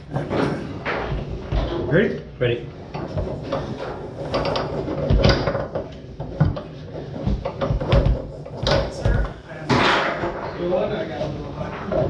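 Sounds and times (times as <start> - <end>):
foosball rods sliding and clacking: 0.0 - 12.0
ball knocking on foosball men: 3.0 - 10.2.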